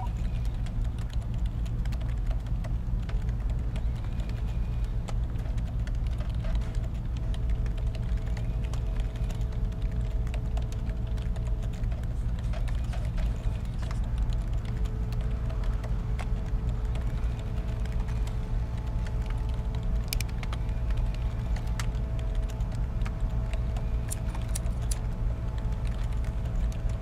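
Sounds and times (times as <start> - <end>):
faint steady hum: 0.0 - 27.0
computer keyboard typing: 19.0 - 27.0.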